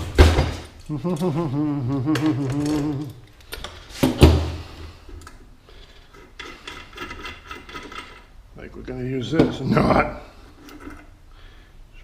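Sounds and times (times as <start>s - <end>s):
person humming: 0.9s - 3.3s.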